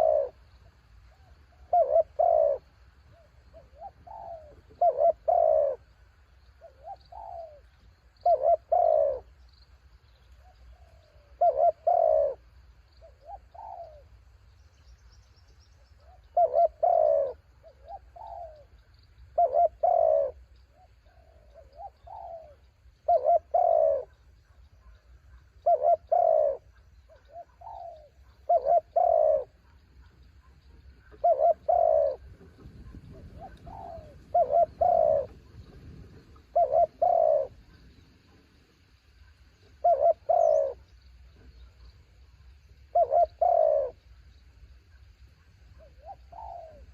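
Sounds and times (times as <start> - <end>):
doves cooing: 0.0 - 0.5, 1.1 - 6.0, 6.6 - 9.4, 10.4 - 14.2, 16.0 - 41.9, 42.8 - 44.1, 45.3 - 46.9.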